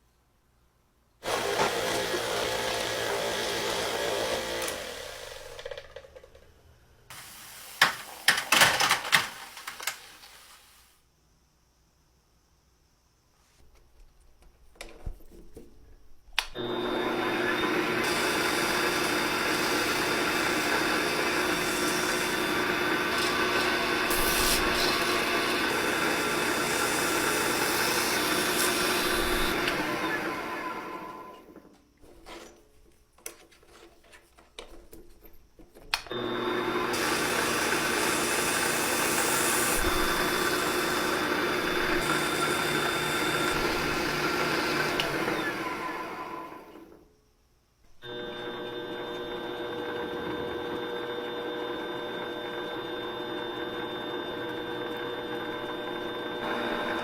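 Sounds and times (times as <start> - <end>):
power tool high whine: 1.2 - 5.8, 16.6 - 31.6, 36.1 - 47.0, 48.0 - 57.0.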